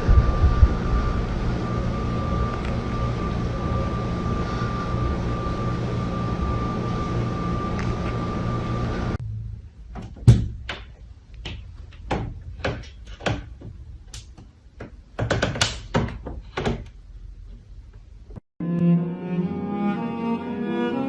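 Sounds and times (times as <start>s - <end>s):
knocks and thumps: 9.9s - 16.9s.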